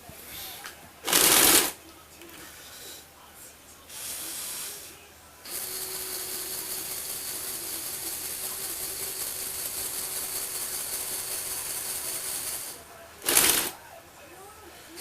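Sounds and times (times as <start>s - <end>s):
small electric motor driving gears: 1.1s - 1.8s, 5.5s - 13.7s.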